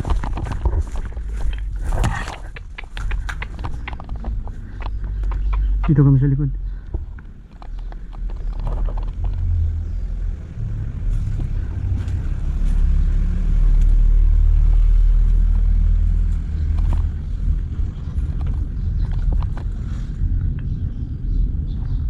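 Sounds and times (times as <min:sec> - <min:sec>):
heavy low rumble: 0:00.0 - 0:22.0
faint clicks: 0:00.1 - 0:06.0, 0:06.8 - 0:09.5.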